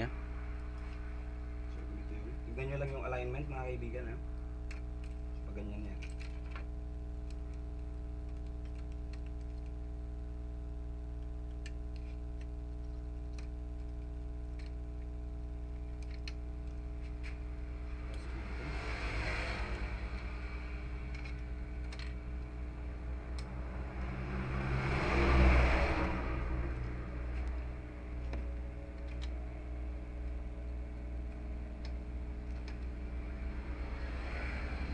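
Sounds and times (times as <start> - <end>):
steady hum: 0.0 - 34.9
broad rushing noise: 23.3 - 28.1.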